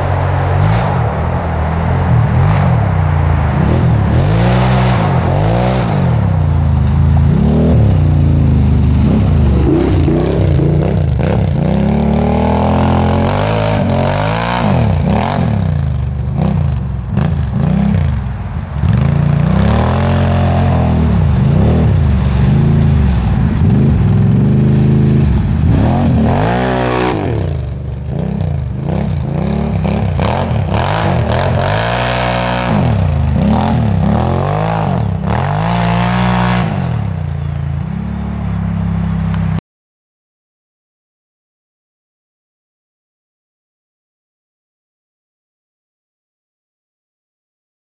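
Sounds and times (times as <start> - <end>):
engine revving up and down: 0.0 - 18.2, 18.8 - 38.6.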